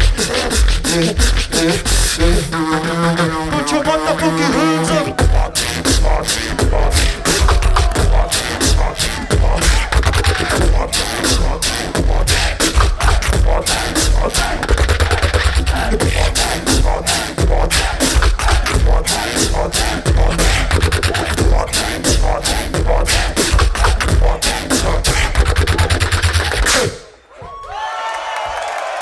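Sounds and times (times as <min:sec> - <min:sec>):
beatboxing: 0:00.0 - 0:27.2.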